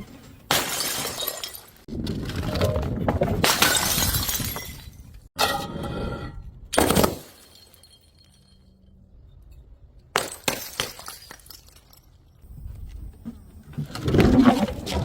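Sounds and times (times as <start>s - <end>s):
glass bottles shattering: 0.5s - 1.9s, 3.5s - 5.5s, 6.8s - 8.7s, 10.2s - 12.2s.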